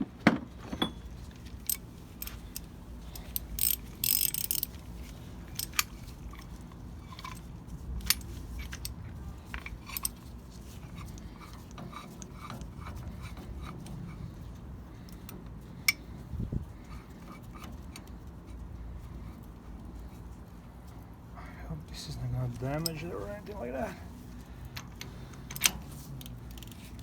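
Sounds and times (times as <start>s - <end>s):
metallic tool clicks and clanks: 1.6s - 4.8s.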